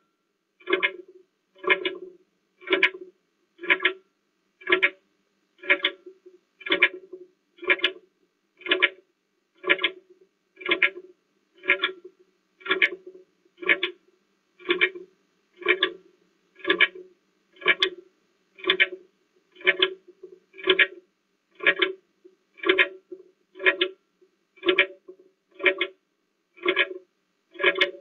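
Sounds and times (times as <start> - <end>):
clock ticking: 0.6 - 3.0, 3.6 - 4.0, 4.6 - 5.0, 5.6 - 8.0, 9.6 - 10.0, 10.6 - 11.0, 11.6 - 13.0, 13.6 - 14.0, 14.6 - 15.0, 15.6 - 16.0, 16.6 - 18.0, 18.6 - 19.0, 19.6 - 21.0, 21.6 - 22.0, 22.6 - 23.0, 23.6 - 24.0, 24.6 - 26.0, 26.6 - 28.0.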